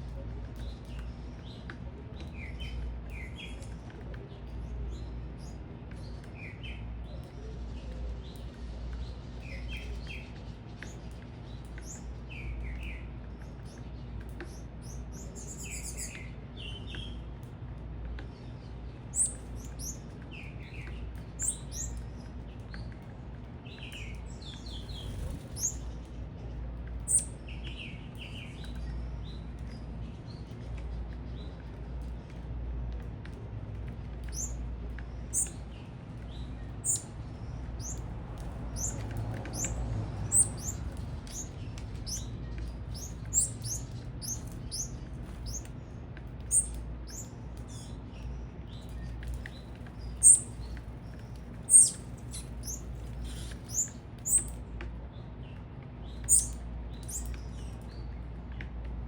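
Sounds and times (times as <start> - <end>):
birds chirping: 0.0 - 17.5, 18.3 - 32.4, 33.8 - 58.9
steady low rumble: 17.3 - 59.0.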